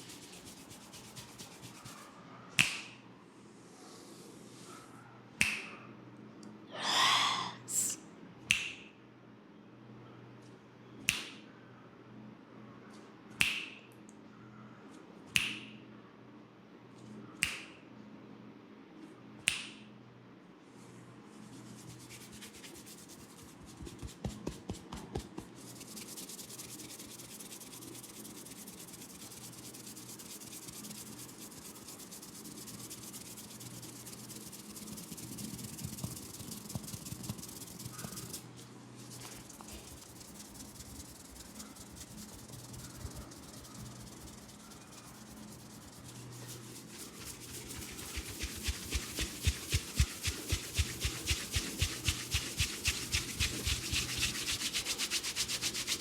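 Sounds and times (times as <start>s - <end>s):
hands rubbing through hair: 0.0s - 2.9s, 21.3s - 56.0s
faint low hum: 0.0s - 56.0s
finger snaps: 2.6s - 3.0s, 5.4s - 6.6s, 8.5s - 8.9s, 11.0s - 11.5s, 13.4s - 14.2s, 15.3s - 15.8s, 17.4s - 17.8s, 19.4s - 19.9s.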